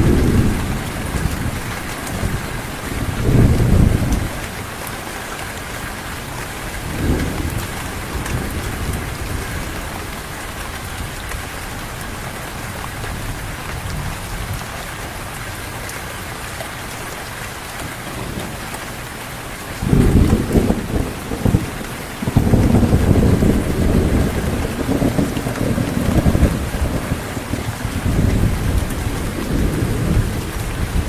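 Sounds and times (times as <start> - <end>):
thunder rumble: 0.0 - 4.6, 6.3 - 11.3, 19.8 - 31.0
heavy rain pattering: 0.0 - 31.0.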